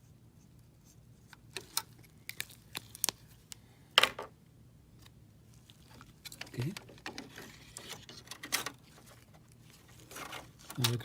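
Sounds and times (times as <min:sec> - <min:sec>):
label rustling: 0:01.4 - 0:03.6, 0:05.5 - 0:11.0.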